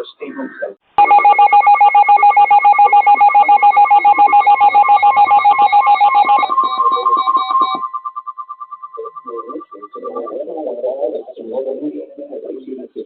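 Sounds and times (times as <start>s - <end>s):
pulsing electronic alert tone: 1.0s - 11.1s.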